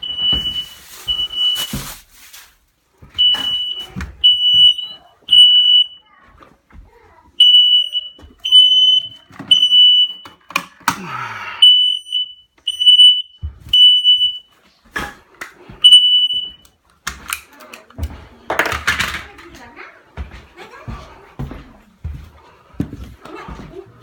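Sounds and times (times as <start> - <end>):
smoke alarm beeping: 0.0 - 2.0, 3.1 - 6.0, 7.4 - 10.6, 11.6 - 14.6, 15.8 - 16.8.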